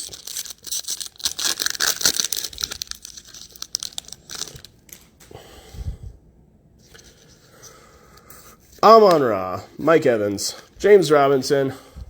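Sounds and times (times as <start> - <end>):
foil wrapper tearing and crinkling: 0.0 - 4.9.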